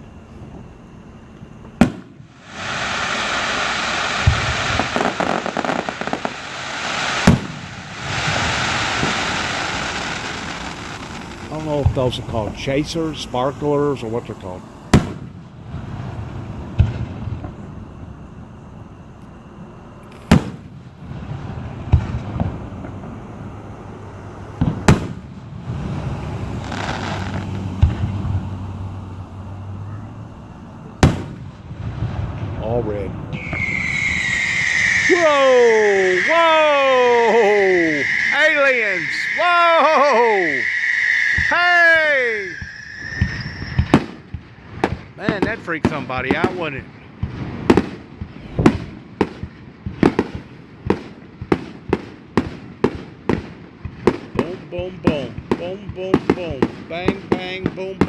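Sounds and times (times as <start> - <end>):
firework shells banging: 1.8 - 12.6, 33.4 - 46.8
firework crackling: 1.8 - 17.3, 20.1 - 29.2, 31.0 - 58.0
firework bangs: 1.8 - 17.7, 20.1 - 28.7, 31.0 - 58.0
dull firework thumps: 42.5 - 58.0.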